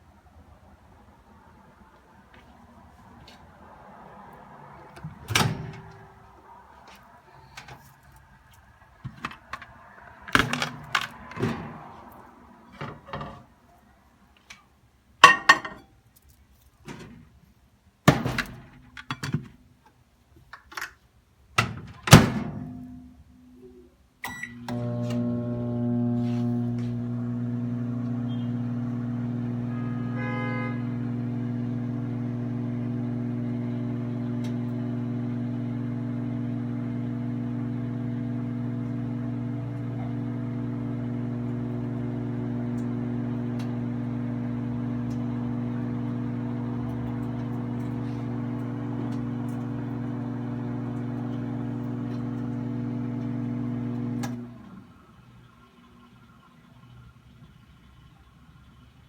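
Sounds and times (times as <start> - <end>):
microwave oven humming: 24.3 - 59.0.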